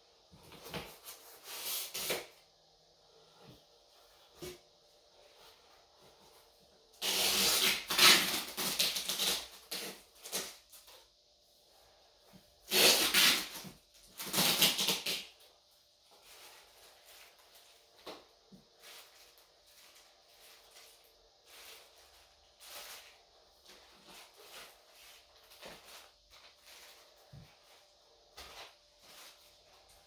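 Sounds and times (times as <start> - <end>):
packaging rustling and scraping: 16.1 - 30.0.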